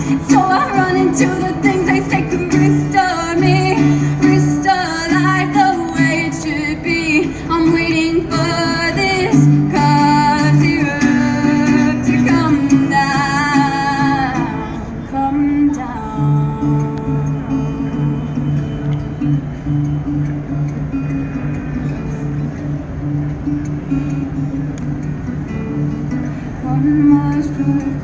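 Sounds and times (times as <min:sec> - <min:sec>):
person singing: 0:00.0 - 0:17.8.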